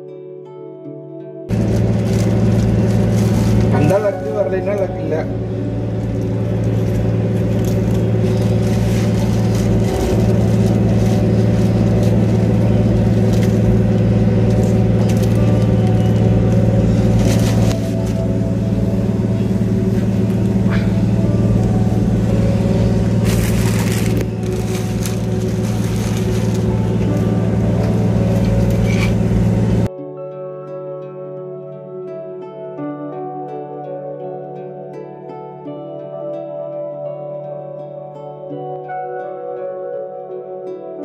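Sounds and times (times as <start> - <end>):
boat engine droning: 1.5 - 29.9.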